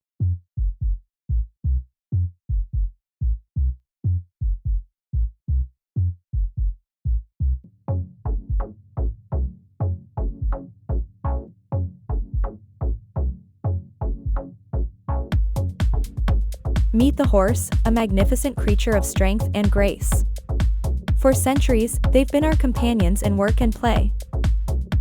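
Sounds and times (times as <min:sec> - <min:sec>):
drum machine kick drum beat: 0:00.6 - 0:01.5, 0:02.5 - 0:03.4, 0:04.4 - 0:05.3, 0:06.4 - 0:07.2, 0:08.3 - 0:08.7, 0:10.2 - 0:10.6, 0:12.1 - 0:12.6, 0:14.0 - 0:14.4, 0:15.3 - 0:25.0.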